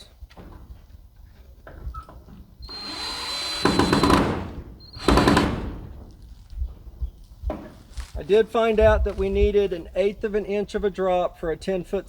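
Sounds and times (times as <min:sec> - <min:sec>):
power drill driving screws: 0:02.6 - 0:06.1.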